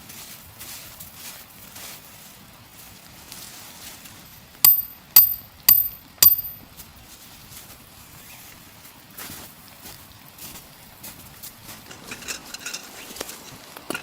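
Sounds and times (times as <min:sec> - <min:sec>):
sharp ringing strikes: 0:04.7 - 0:06.6.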